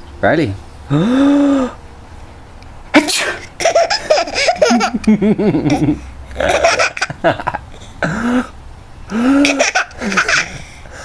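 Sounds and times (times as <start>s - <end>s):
small child laughing: 3.0s - 7.8s, 9.1s - 10.7s.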